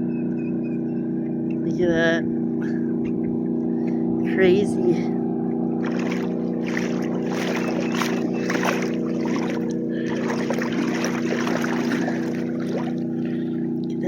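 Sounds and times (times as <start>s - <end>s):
engine hum: 0.0s - 14.0s
flock of water birds: 6.0s - 14.0s.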